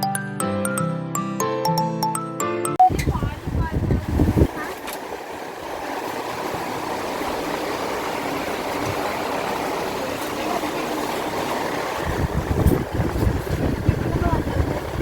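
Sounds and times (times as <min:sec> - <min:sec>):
wind buffeting microphone: 0:02.9 - 0:04.8, 0:05.5 - 0:15.0.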